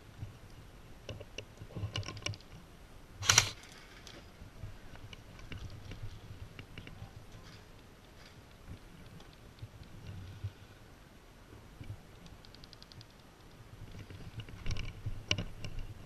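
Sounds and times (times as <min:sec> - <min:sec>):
light clicks and knocks: 0:11.8 - 0:15.9.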